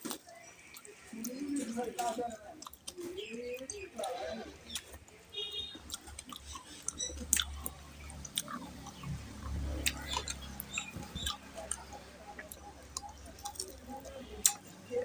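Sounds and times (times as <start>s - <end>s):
person chewing with lip smacks: 5.7s - 14.8s.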